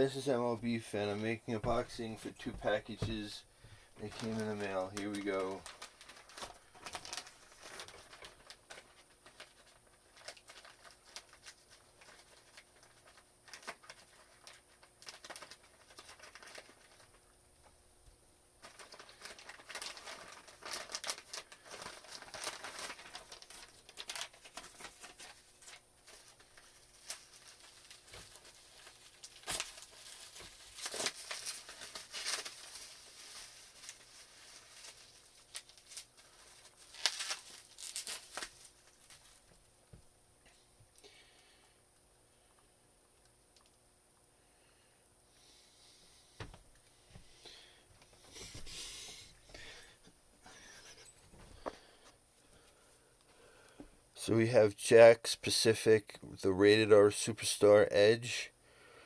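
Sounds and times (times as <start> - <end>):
packaging rustling and tearing: 4.0 - 17.3, 18.6 - 39.6.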